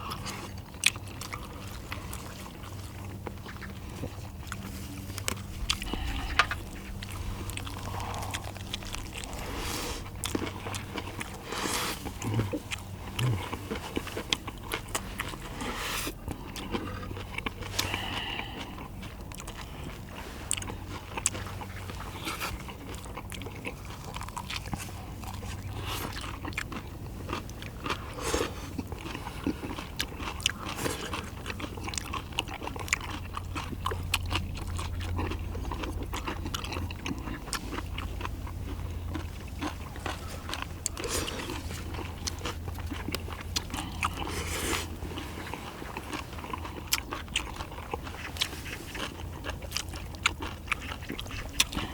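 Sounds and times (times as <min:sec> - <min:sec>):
food being bitten and chewed: 0:00.0 - 0:51.9.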